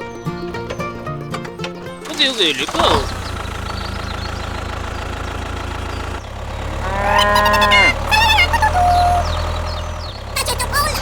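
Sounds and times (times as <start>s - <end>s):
small engine running: 0.1s - 11.0s
cow mooing: 6.7s - 9.4s.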